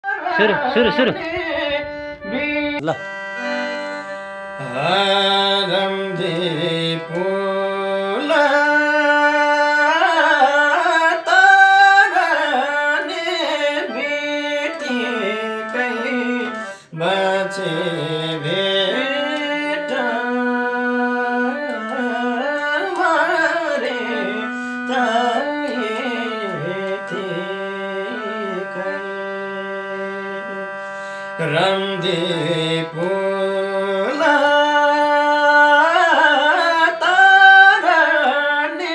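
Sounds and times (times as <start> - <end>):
folk melody with bending notes: 0.0 - 38.9.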